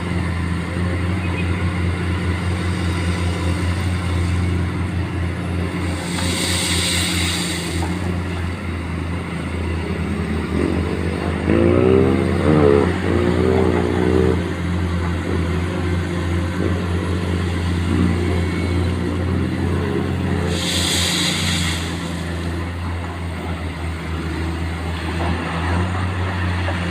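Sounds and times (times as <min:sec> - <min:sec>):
excavator diesel engine running: 0:00.0 - 0:26.9
short hiss: 0:05.9 - 0:08.2, 0:20.5 - 0:22.5.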